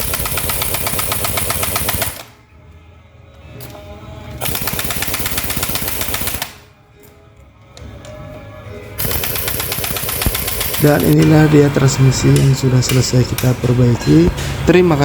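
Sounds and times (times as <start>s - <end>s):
impact wrench rattling: 0.0s - 2.2s, 9.0s - 11.5s.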